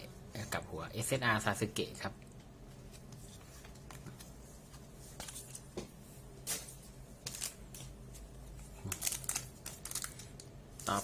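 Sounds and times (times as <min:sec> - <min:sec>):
low room hum: 0:00.0 - 0:11.0
trading cards rustling: 0:06.5 - 0:07.9, 0:08.7 - 0:11.0.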